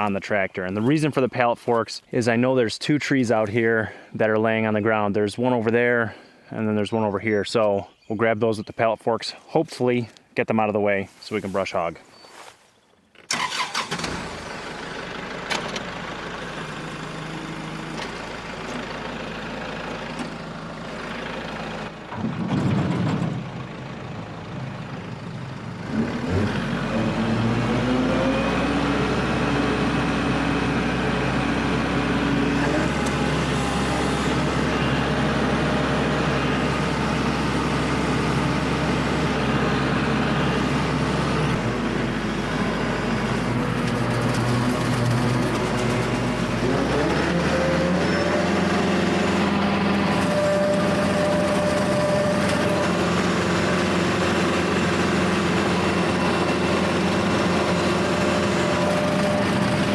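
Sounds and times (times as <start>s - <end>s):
tractor diesel engine revving: 13.3s - 59.9s.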